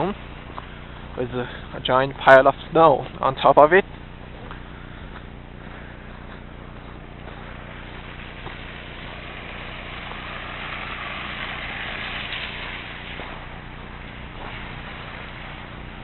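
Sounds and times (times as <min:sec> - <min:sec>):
car driving past on snowy road: 0:07.9 - 0:16.0.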